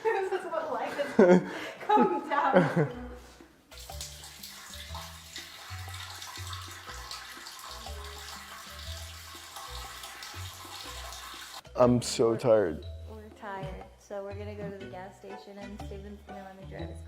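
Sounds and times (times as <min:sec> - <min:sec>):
bass line music: 0:02.7 - 0:17.0
water running from a tap: 0:03.7 - 0:11.6.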